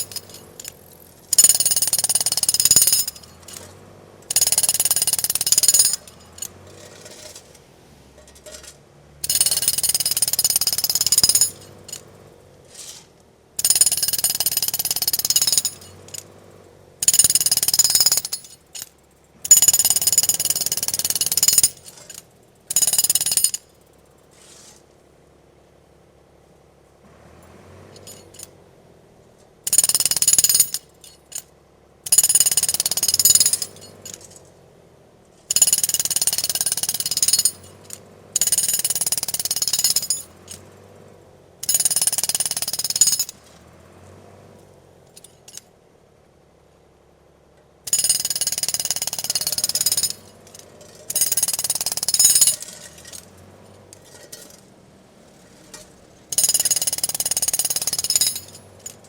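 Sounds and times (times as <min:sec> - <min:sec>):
jackhammer bursts: 0:00.0 - 0:07.4, 0:09.2 - 0:13.0, 0:13.6 - 0:16.4, 0:17.0 - 0:23.7, 0:29.6 - 0:31.4, 0:32.1 - 0:34.3, 0:35.5 - 0:40.8, 0:41.6 - 0:43.5, 0:47.9 - 0:54.6, 0:55.2 - 0:59.0.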